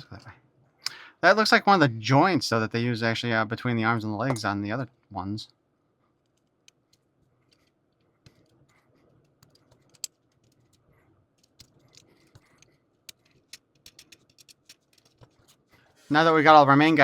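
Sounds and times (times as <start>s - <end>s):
plastic parts clicking: 6.2s - 15.7s.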